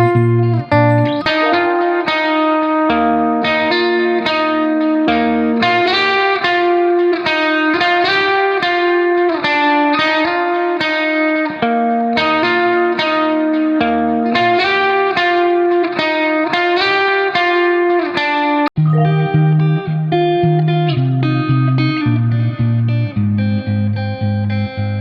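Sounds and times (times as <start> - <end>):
bass line: 0.0 - 1.8, 18.8 - 20.3
plucked melody: 0.0 - 2.9, 18.8 - 21.0.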